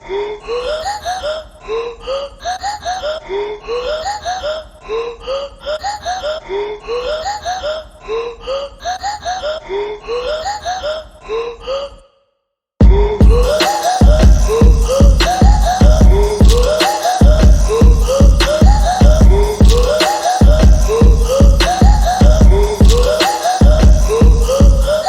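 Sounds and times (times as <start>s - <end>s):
looping rising notes music: 13.2s - 25.0s.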